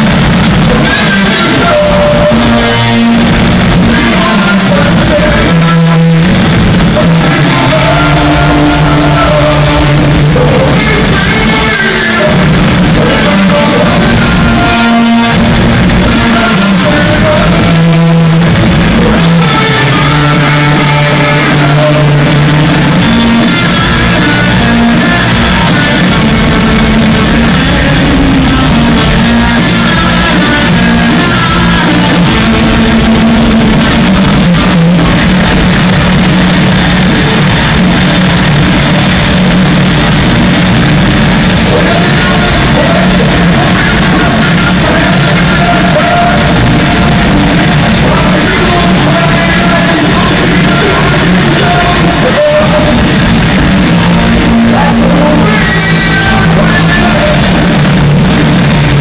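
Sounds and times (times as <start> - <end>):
distorted guitars: 0.0 - 59.0
drums: 0.0 - 59.0
person singing: 0.0 - 59.0.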